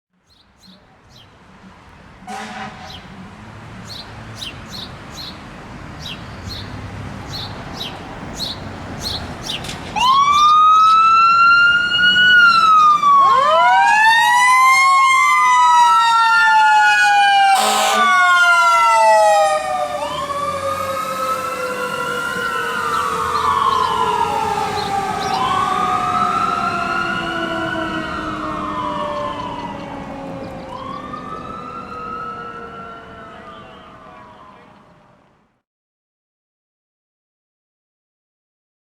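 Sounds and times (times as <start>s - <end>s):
horn blast: 2.2s - 3.0s, 17.5s - 18.3s
siren fast warble: 10.0s - 34.7s
fire engine siren wailing: 10.0s - 35.4s.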